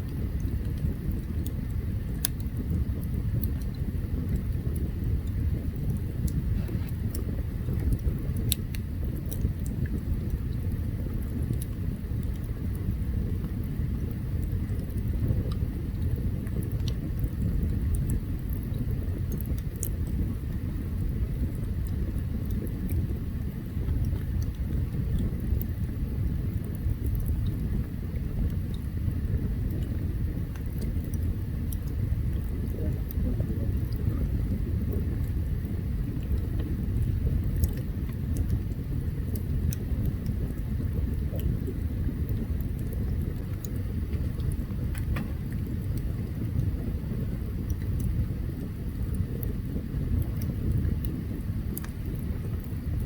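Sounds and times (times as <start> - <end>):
campfire burning: 0.0 - 53.0
fire crackles and pops: 0.0 - 53.0.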